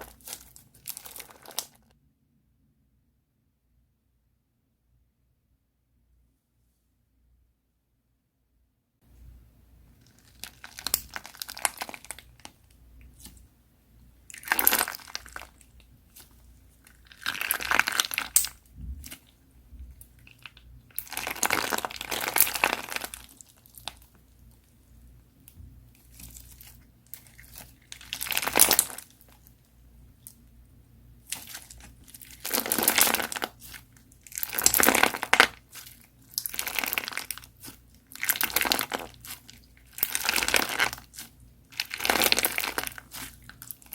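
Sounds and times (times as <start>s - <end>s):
crunchy slime crackling: 0.0s - 1.8s, 10.1s - 13.4s, 14.2s - 24.2s, 26.0s - 29.5s, 31.2s - 43.9s.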